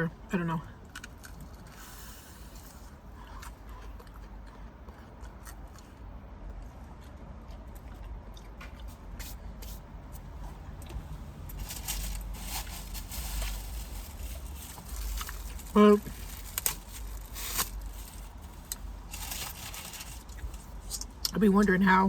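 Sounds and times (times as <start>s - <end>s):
chewing mouth sounds: 3.0s - 9.8s.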